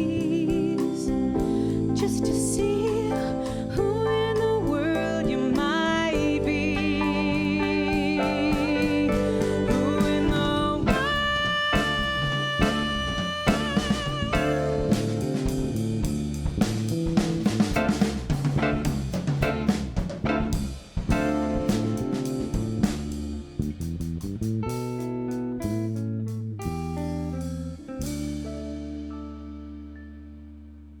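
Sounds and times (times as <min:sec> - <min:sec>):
drum kit with snare and cymbals: 0:00.0 - 0:29.3
bass: 0:00.0 - 0:31.0
keyboard chords: 0:00.0 - 0:31.0
lead instrument with vibrato: 0:05.0 - 0:16.4.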